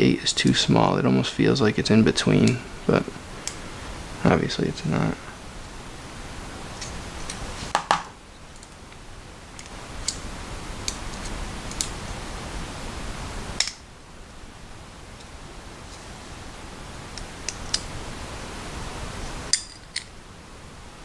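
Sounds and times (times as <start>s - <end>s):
steady hiss: 0.0s - 21.0s.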